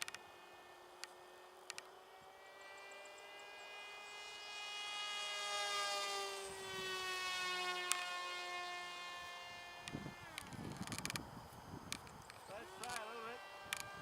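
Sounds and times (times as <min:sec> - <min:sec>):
electric propeller motor whining: 0:00.0 - 0:14.0
short clicks: 0:11.9 - 0:14.0.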